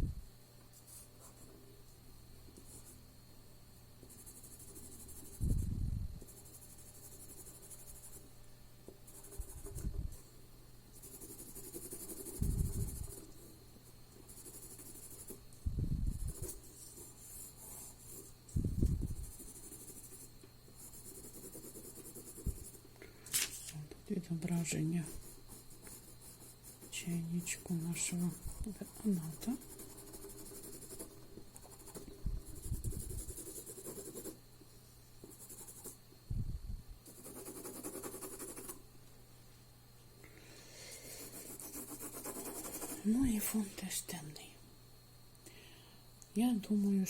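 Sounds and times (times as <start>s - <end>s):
drawing strokes scratching on paper: 6.2s - 8.3s, 9.1s - 10.2s, 11.0s - 13.6s, 14.2s - 15.5s, 16.1s - 22.9s, 25.0s - 34.4s, 35.2s - 36.0s, 37.1s - 38.8s, 41.2s - 43.2s.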